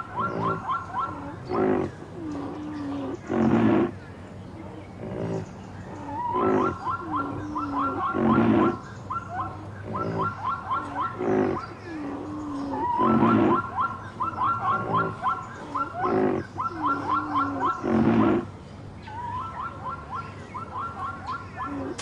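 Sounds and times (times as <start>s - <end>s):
short low animal calls: 4.7s - 18.5s.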